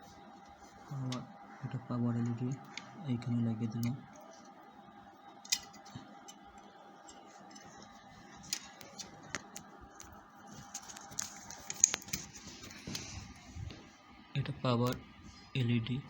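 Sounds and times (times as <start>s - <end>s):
plastic connectors clicking: 10.8s - 12.3s.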